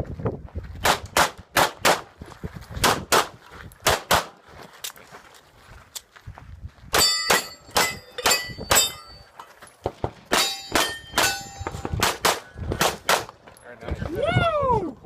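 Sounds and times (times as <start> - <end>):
pistol shots: 0.8 - 2.1, 2.8 - 4.4, 10.3 - 13.3
steel target clanging: 7.0 - 9.3, 10.3 - 11.9.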